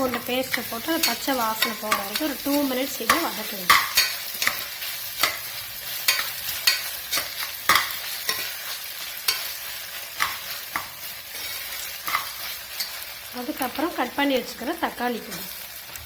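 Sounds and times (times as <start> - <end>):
utensil scraping metal pot: 0.0 - 13.0
onions sizzling in hot oil: 0.0 - 16.0.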